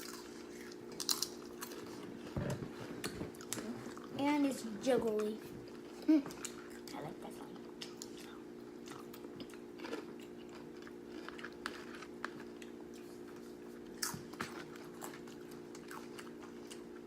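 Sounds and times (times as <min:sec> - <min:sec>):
chewing and crunching chips: 0:00.0 - 0:04.2, 0:05.1 - 0:17.0
steady low hum: 0:00.0 - 0:17.0.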